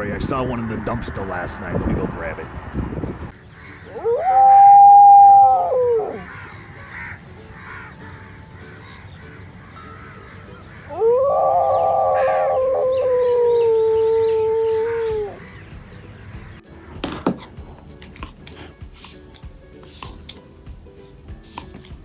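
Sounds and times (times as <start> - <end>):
long animal cries: 3.9 - 6.5, 10.9 - 15.4.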